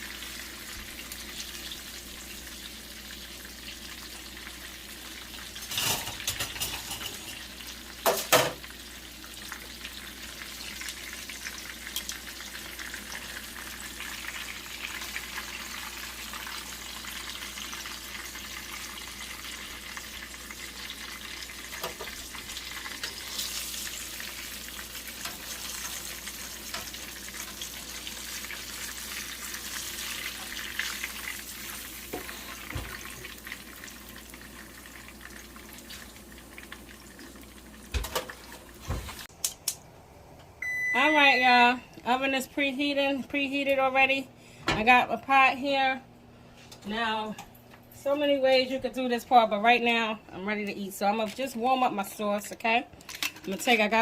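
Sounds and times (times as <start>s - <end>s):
chicken frying in hot oil: 0.0s - 39.3s.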